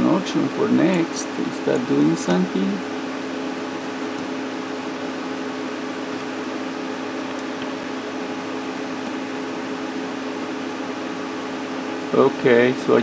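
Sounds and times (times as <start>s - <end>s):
fan humming: 0.0s - 13.0s.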